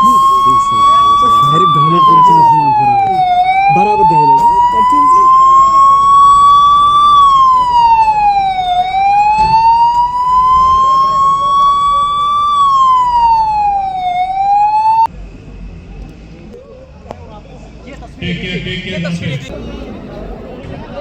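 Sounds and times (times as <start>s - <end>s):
siren wailing: 0.0s - 15.1s.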